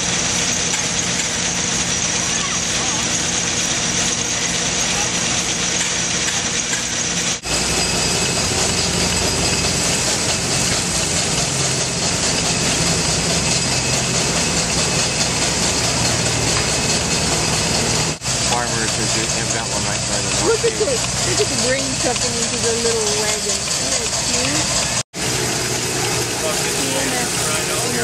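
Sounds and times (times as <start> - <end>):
machinery running: 0.0 - 28.0
steady tones: 0.0 - 28.0.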